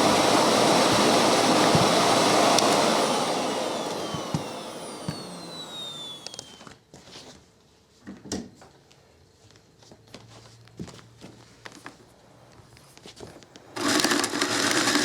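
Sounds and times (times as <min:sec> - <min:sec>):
vacuum motor winding down: 0:00.0 - 0:06.8, 0:13.8 - 0:15.0.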